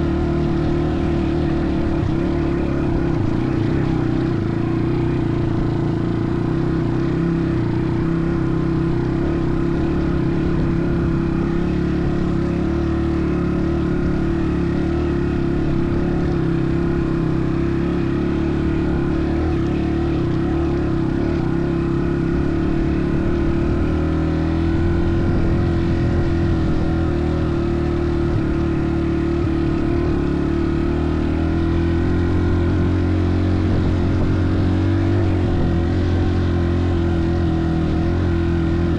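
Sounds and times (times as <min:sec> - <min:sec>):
engine running steadily: 0:00.0 - 0:38.9.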